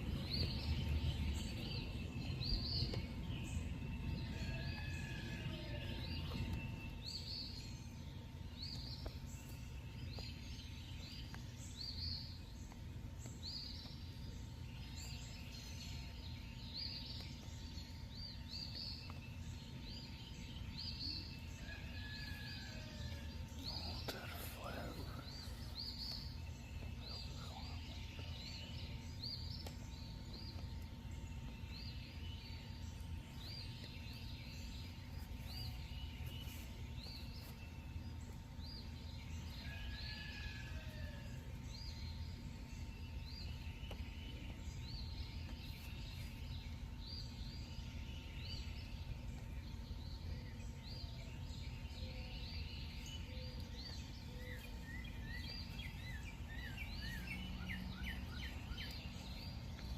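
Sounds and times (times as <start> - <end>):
low steady rumble: 0.0 - 40.0.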